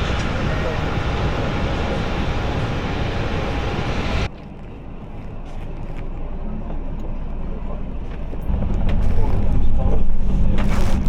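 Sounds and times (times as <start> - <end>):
aircraft rushing noise: 0.0 - 4.3
low rumble: 0.0 - 11.0.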